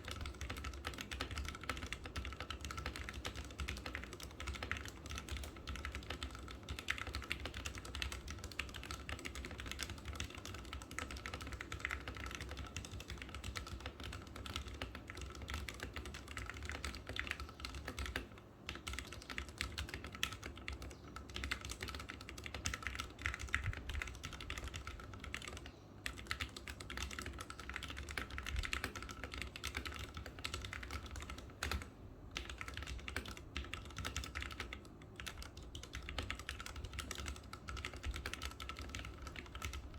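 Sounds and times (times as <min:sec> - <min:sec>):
fast mechanical keyboard typing: 0:00.0 - 0:39.9.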